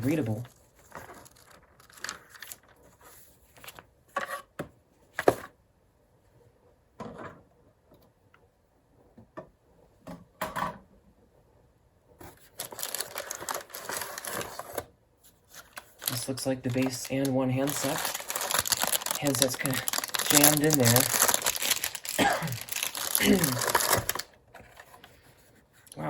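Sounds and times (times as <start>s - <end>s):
packaging rustling: 0.0s - 3.8s, 12.3s - 14.8s, 15.5s - 25.1s.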